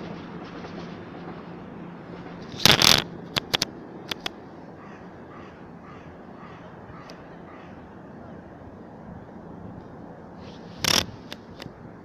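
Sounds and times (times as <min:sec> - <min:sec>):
faint bird calls: 0:04.8 - 0:08.4.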